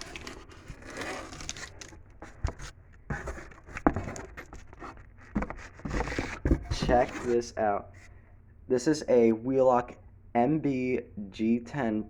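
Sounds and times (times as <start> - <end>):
packaging rustling: 0.0 - 7.4.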